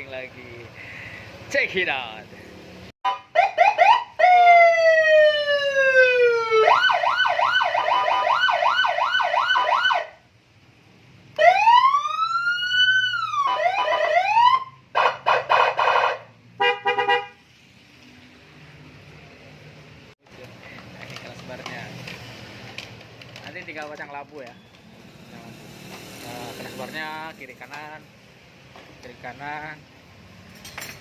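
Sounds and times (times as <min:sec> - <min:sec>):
siren through horn speaker: 0:03.1 - 0:10.2, 0:11.4 - 0:16.2.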